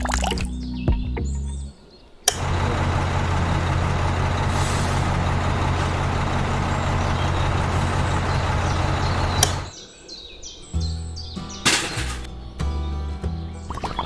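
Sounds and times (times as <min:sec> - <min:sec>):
heavy engine rumble with hiss: 0:02.4 - 0:09.8.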